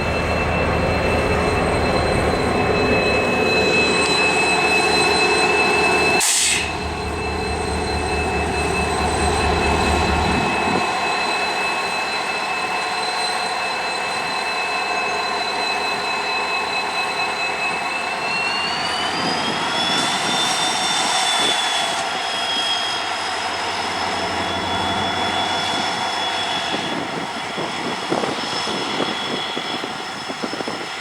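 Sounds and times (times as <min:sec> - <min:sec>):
high whine: 0:00.0 - 0:12.4
train rushing past on rails: 0:00.0 - 0:31.0.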